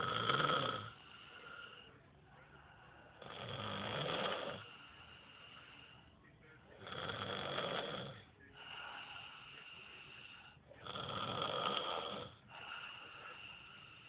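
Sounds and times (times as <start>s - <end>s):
person snoring: 0.0s - 1.8s, 3.2s - 4.7s, 6.8s - 14.0s
quiet breathing: 0.0s - 14.0s.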